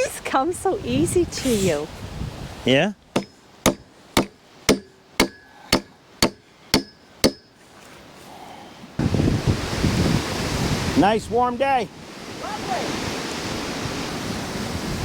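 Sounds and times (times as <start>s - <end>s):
wind noise: 0.0s - 3.2s, 9.0s - 15.0s
hammer blows ringing: 3.2s - 7.6s.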